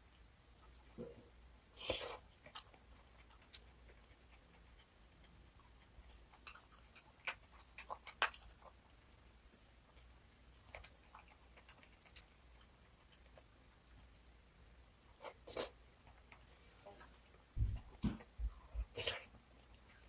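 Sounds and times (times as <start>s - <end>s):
snack crunching: 1.8s - 14.2s.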